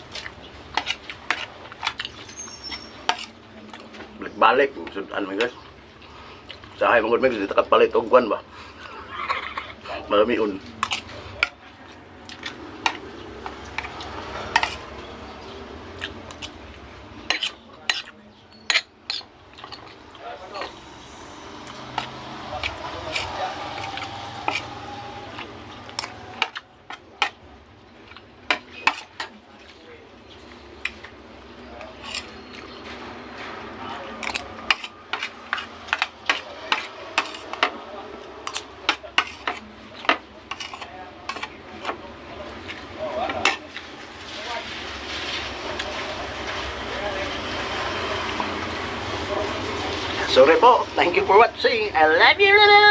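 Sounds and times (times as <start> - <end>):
cutlery scraping a plate: 0.2 - 3.4, 10.8 - 11.6, 12.3 - 14.9, 17.2 - 20.0, 23.1 - 24.7, 28.1 - 29.4, 31.8 - 33.5, 34.2 - 37.8, 38.4 - 42.0, 42.6 - 43.8
cutlery clinking on a plate: 17.3 - 20.0.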